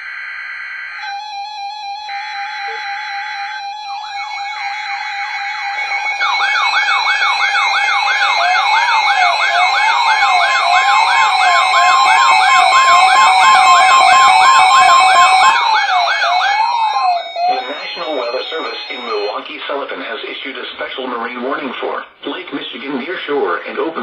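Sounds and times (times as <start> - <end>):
slow wailing siren: 0.0 - 19.4
warbling electronic sirens: 0.0 - 19.6
steady alert tone: 1.0 - 19.4.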